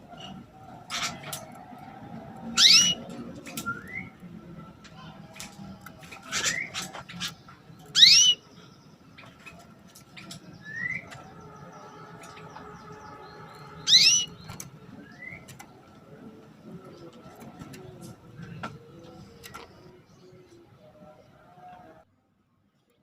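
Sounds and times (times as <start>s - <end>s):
canary chirping calls: 0.1s - 4.2s, 5.2s - 17.8s.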